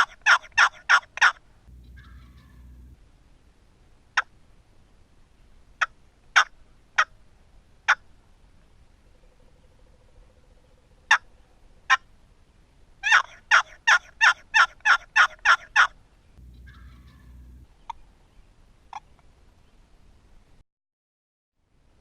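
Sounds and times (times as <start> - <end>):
raspy turkey call yelps: 0.0 - 3.0, 5.8 - 7.2, 7.9 - 8.1, 11.1 - 11.3, 13.0 - 18.0.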